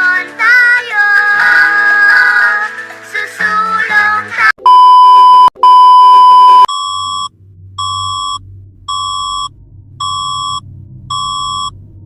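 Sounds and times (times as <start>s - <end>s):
electronic beeps: 4.6s - 11.8s
distorted alert tones: 4.7s - 11.8s
low hum: 5.6s - 12.0s.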